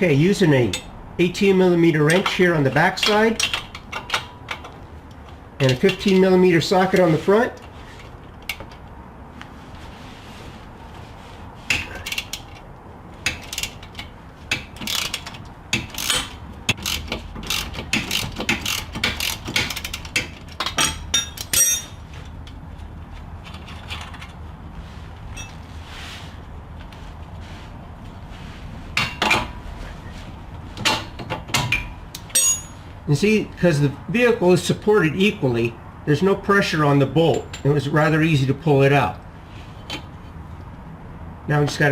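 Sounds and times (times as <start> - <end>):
hand ratchet clicking: 13.2 - 21.8.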